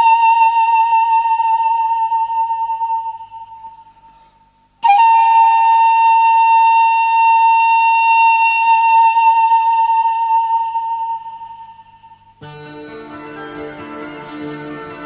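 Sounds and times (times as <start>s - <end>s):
flute-like wind instrument: 0.0s - 4.0s, 4.8s - 12.3s.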